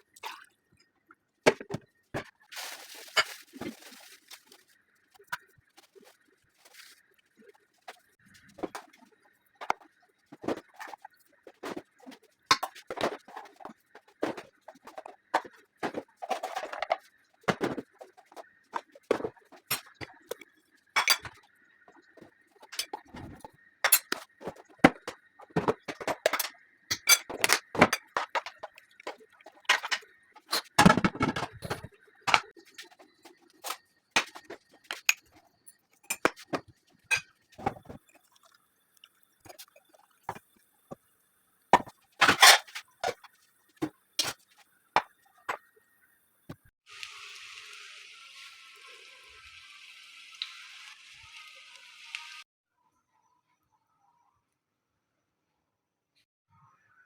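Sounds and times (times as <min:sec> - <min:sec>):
dishes and utensils clattering: 0:12.5 - 0:20.4, 0:21.0 - 0:21.4, 0:22.6 - 0:32.9, 0:33.6 - 0:35.3, 0:36.0 - 0:38.0, 0:41.8 - 0:43.3.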